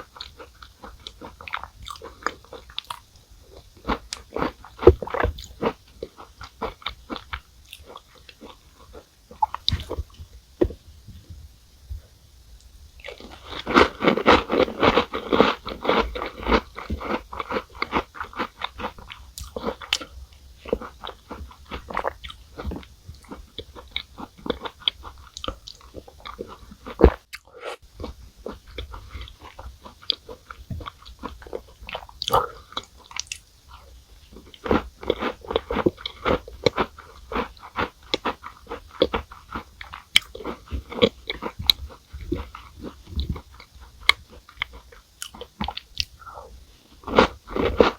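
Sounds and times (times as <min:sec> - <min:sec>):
crunching cookie bites: 0:00.0 - 0:10.8, 0:13.0 - 0:47.9
wet chewing: 0:00.0 - 0:10.8, 0:13.0 - 0:47.9.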